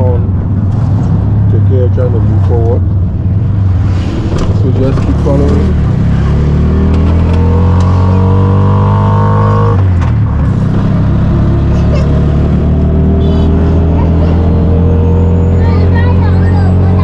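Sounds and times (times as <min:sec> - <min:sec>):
engine whine: 0:00.0 - 0:17.0.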